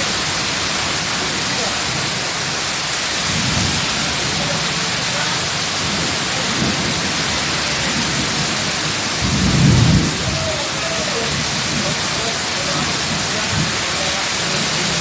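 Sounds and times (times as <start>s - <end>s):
heavy rain pouring: 0.0s - 15.0s
thunder rumbling: 3.1s - 15.0s.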